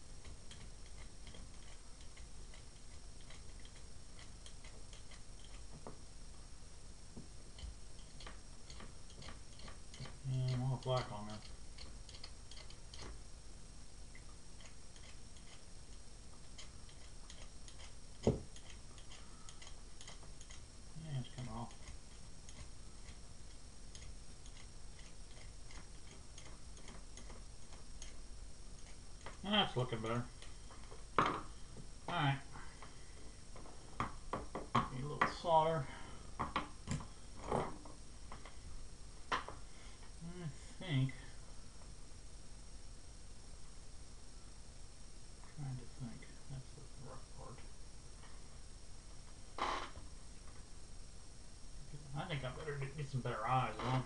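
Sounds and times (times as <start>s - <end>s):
steady low hum: 0.0s - 54.0s
light ticks and clicks: 0.2s - 5.8s, 7.5s - 13.2s.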